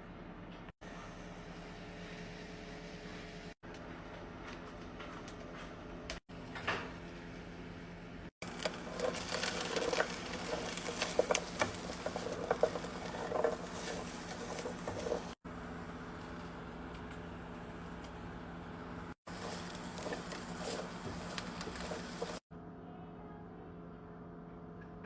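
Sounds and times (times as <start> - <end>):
utensil clicks taps and scrapes: 8.4 - 15.4, 19.3 - 22.4.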